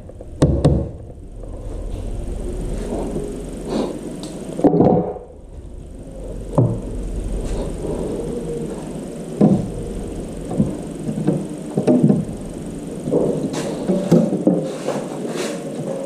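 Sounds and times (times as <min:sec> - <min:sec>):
steady low hum: 0:00.0 - 0:16.0
knocks and thuds: 0:00.2 - 0:01.1.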